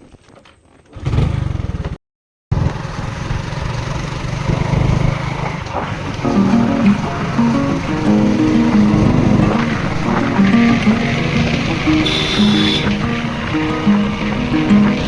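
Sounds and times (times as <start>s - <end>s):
small engine running: 2.5s - 6.2s, 8.1s - 15.0s
music: 6.2s - 15.0s.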